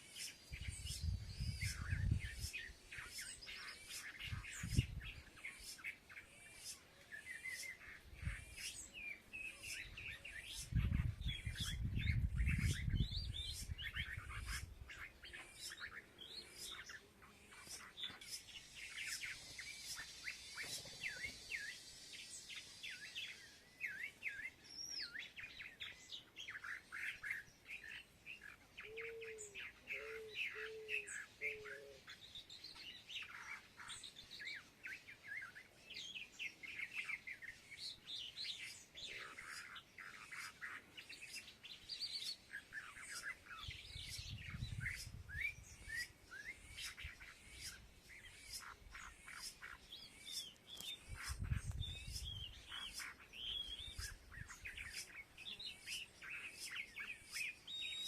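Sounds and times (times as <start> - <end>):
small birds chirping: 0.0 - 58.0.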